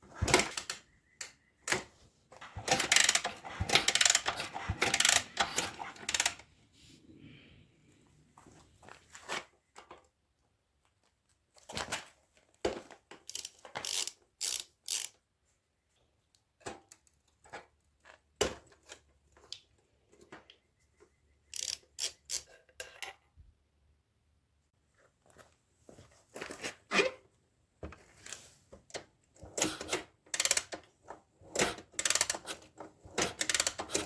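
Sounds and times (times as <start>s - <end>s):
mechanical clicks and clanks: 0.2s - 6.4s, 29.5s - 30.8s, 31.5s - 34.0s
ratchet clicking: 2.6s - 6.4s, 13.3s - 15.2s, 21.5s - 22.5s, 29.7s - 30.7s, 31.6s - 32.6s, 33.2s - 34.0s.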